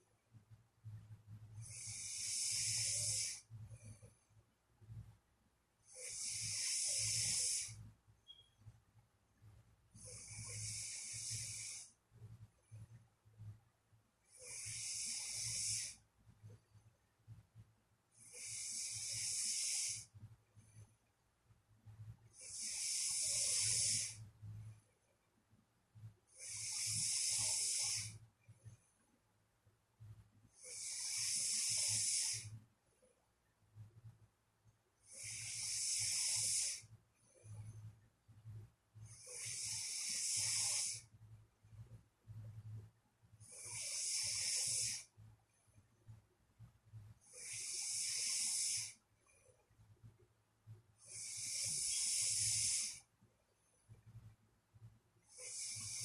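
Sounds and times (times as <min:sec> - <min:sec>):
person snoring: 0:01.6 - 0:03.5, 0:05.9 - 0:07.8, 0:10.0 - 0:11.9, 0:14.3 - 0:16.0, 0:18.2 - 0:20.1, 0:22.4 - 0:24.2, 0:26.3 - 0:28.2, 0:30.6 - 0:32.5, 0:35.1 - 0:36.9, 0:39.1 - 0:41.1, 0:43.4 - 0:45.1, 0:47.3 - 0:49.0, 0:51.0 - 0:53.0, 0:55.3 - 0:56.0.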